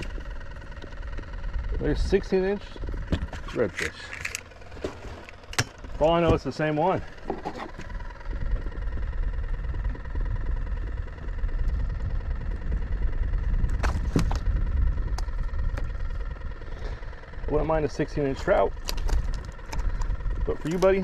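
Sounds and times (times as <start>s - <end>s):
wind buffeting microphone: 7.8s - 21.0s
handling clicks and knocks: 18.7s - 21.0s.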